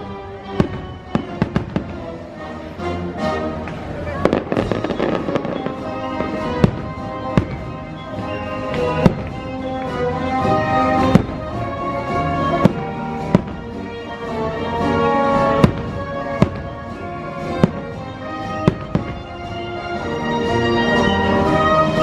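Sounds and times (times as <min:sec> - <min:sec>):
fireworks bangs: 0:00.0 - 0:02.4, 0:03.6 - 0:22.0
orchestral music: 0:00.0 - 0:22.0.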